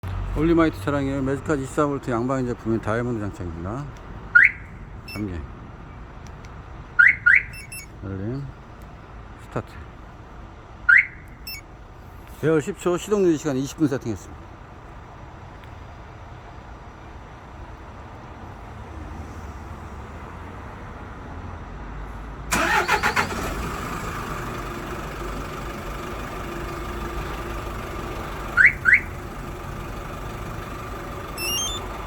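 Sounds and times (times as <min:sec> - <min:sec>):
diesel engine idling: 0:00.0 - 0:13.4, 0:22.5 - 0:32.0
short rising chirps: 0:07.0 - 0:07.9, 0:11.1 - 0:11.6, 0:31.4 - 0:31.9
stepped electronic beeps: 0:07.0 - 0:07.9, 0:11.0 - 0:11.6, 0:31.4 - 0:31.9
starter cranking: 0:22.5 - 0:23.5.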